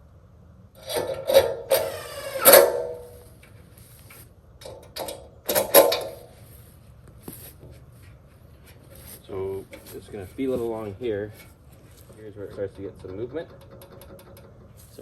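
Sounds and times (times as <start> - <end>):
impact driver driving screws: 0.8 - 3.2.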